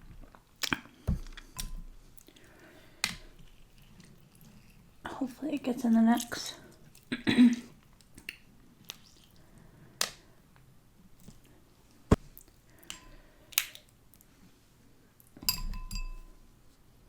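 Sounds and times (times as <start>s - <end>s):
mouth clicks and smacks: 0.6s - 1.4s, 8.0s - 9.4s
short ringing clink: 15.5s - 16.3s.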